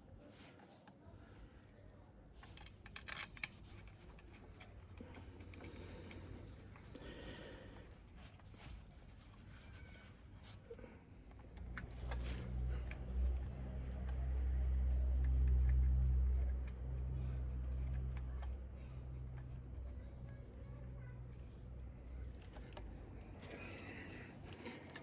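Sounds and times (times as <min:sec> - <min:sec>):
metal engine parts clicking: 0:02.4 - 0:07.0.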